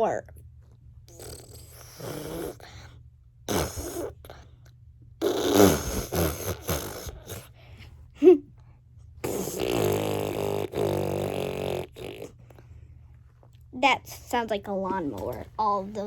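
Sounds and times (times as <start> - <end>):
girl making buzzing mouth noises: 1.1 - 2.8, 3.5 - 4.4, 5.2 - 7.5, 9.2 - 12.4.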